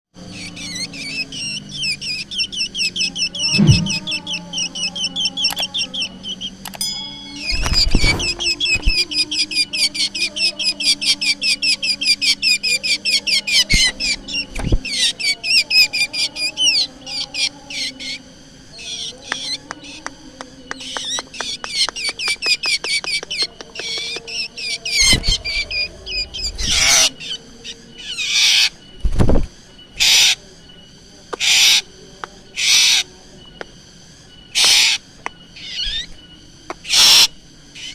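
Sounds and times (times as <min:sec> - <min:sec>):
bird singing high chattering notes: 0:00.3 - 0:18.2, 0:20.7 - 0:28.8
loud thumps: 0:03.5 - 0:04.1.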